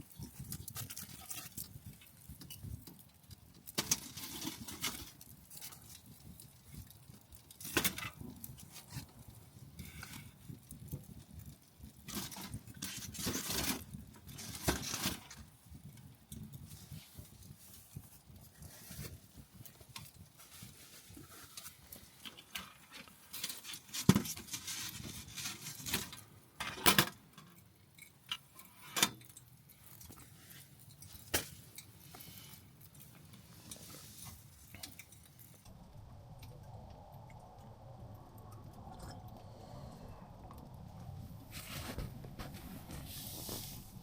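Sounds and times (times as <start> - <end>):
steady low noise: 35.7 - 44.0.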